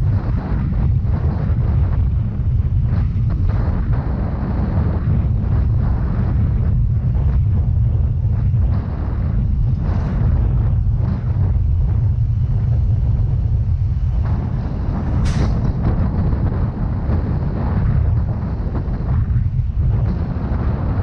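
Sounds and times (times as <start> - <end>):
road noise: 0.0 - 21.0
wind rumble on microphone: 0.0 - 21.0
sharp click: 15.2 - 15.8.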